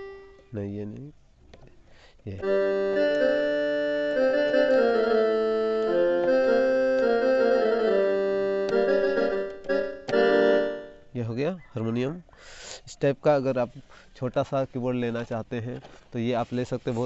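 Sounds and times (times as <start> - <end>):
keyboard playing harmonium tune: 0.0 - 0.8, 2.4 - 11.2.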